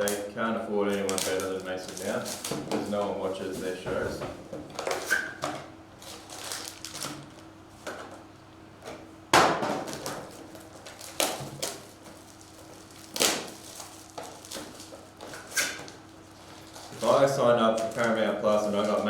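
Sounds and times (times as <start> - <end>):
card boxes rustling: 0.9 - 5.1, 9.9 - 19.0.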